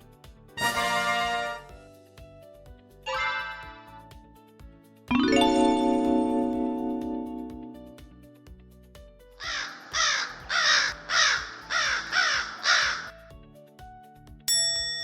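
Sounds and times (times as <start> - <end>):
light background music: 0.0 - 15.0
crow cawing: 9.4 - 13.3.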